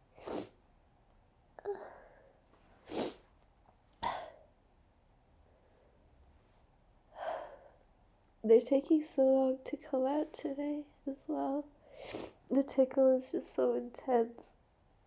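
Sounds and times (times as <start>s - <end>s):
woman sneezing: 2.9s - 3.2s.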